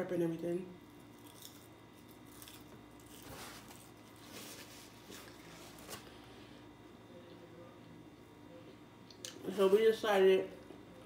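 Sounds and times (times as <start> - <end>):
soft chewing crunches: 0.8 - 6.4.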